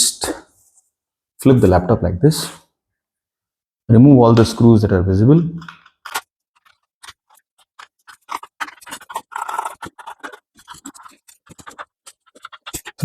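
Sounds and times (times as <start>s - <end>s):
screwdriver clicking and scratching: 5.6s - 13.0s.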